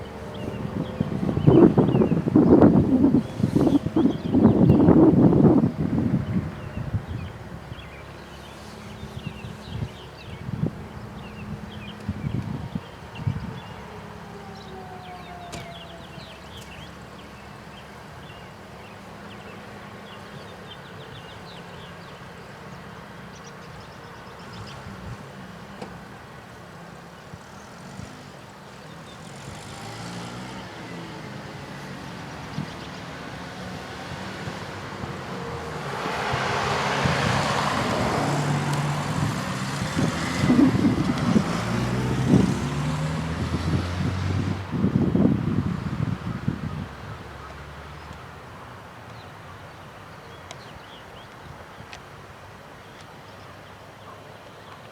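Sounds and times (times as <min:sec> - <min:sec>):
wind noise on microphone: 0:00.0 - 0:13.9, 0:31.8 - 0:47.3.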